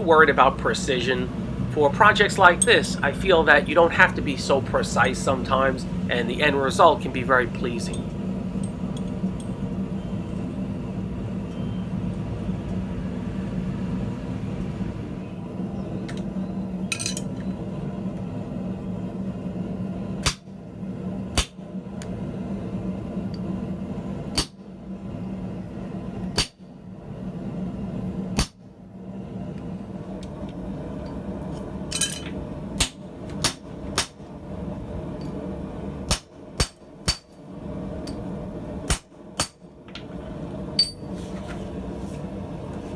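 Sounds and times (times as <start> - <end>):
steady low hum: 0.0 - 42.9
hammer striking steel on anvil: 16.9 - 17.3, 36.1 - 37.4, 38.9 - 39.6, 40.8 - 41.1.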